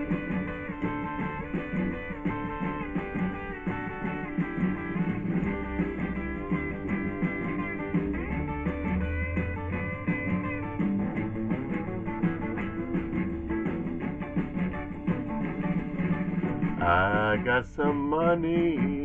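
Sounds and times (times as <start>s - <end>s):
bass line: 0.0s - 19.0s
rock guitar lead: 0.0s - 19.0s.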